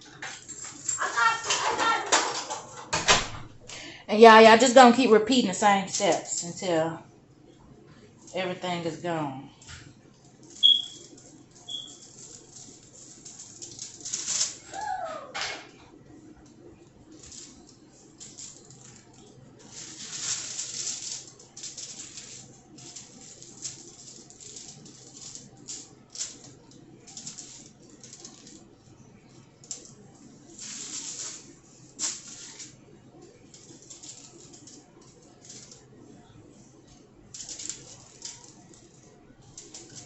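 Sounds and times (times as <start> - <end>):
hands rustling food on counter: 9.6 - 14.9, 16.4 - 28.7, 29.3 - 40.0.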